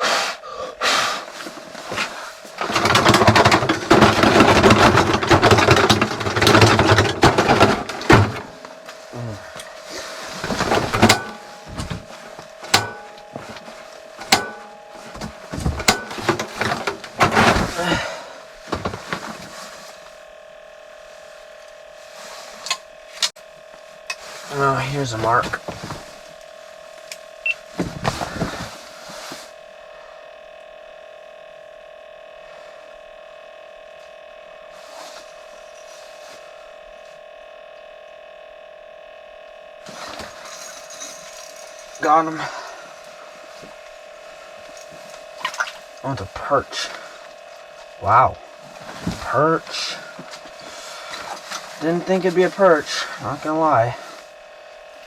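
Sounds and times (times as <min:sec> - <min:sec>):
faint steady hum: 0:00.4 - 0:31.0
steady electronic whine: 0:01.7 - 0:26.4, 0:31.7 - 0:55.0
sharp ringing knocks: 0:10.6 - 0:16.8.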